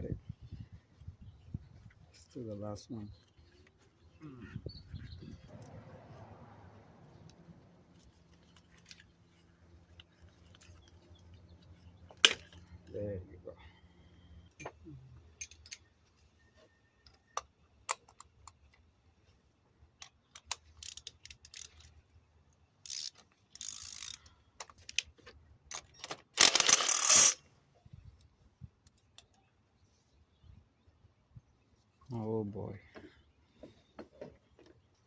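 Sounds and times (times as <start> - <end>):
metal tools clinking: 14.6 - 15.9
ratchet wrench clicking: 20.3 - 21.9, 22.8 - 24.7, 26.4 - 27.4.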